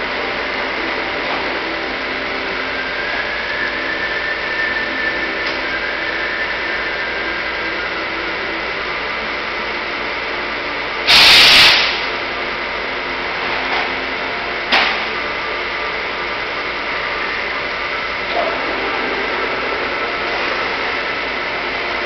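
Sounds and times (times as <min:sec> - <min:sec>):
milling machine running: 0:00.0 - 0:22.0
loud hiss: 0:11.0 - 0:12.2.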